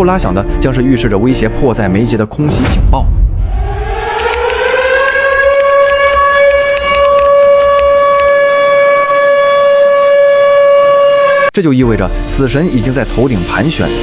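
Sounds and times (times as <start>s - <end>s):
air-raid siren wailing: 4.1s - 11.5s.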